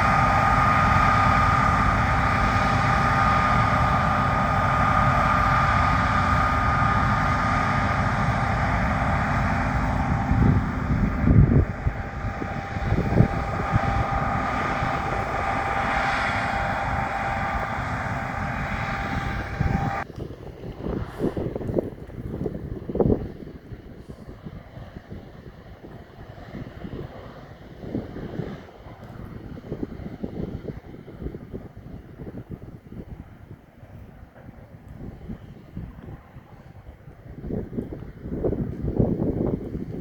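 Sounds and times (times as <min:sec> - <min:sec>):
high mechanical whine: 0:00.0 - 0:24.7
combine harvester drone: 0:00.0 - 0:40.0
wind buffeting microphone: 0:00.0 - 0:40.0.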